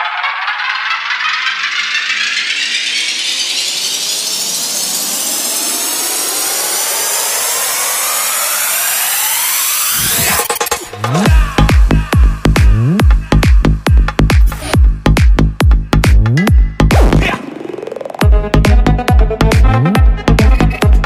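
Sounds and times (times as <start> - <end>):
synth riser sweeping upward: 0.0 - 11.3, 16.9 - 20.2
kick drum and rolling bassline: 8.6 - 21.0.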